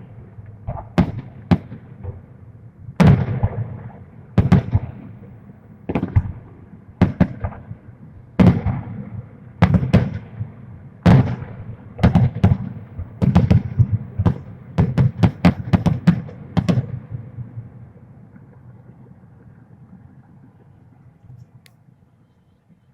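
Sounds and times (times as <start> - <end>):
fireworks booms echoing: 0.0 - 2.3, 3.0 - 17.8.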